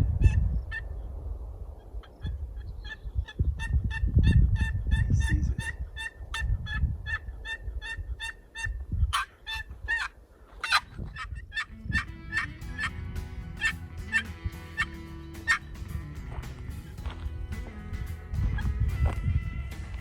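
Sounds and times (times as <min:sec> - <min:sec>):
turkey yelping: 0:00.0 - 0:00.9, 0:01.8 - 0:15.8
background music: 0:11.7 - 0:20.0.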